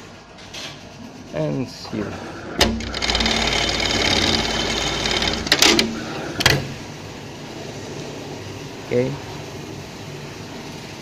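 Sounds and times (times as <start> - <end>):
sewing machine stitching: 2.6 - 6.6
sharp mechanical clicks: 2.6 - 6.6.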